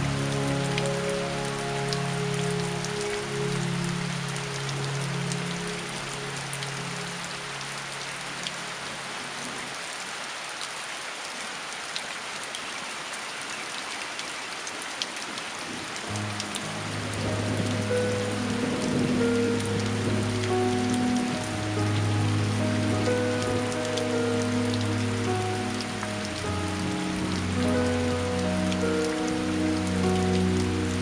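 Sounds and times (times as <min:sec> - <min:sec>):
soft music with low notes: 0:00.0 - 0:09.4, 0:16.0 - 0:31.0
steady rain falling: 0:00.0 - 0:31.0.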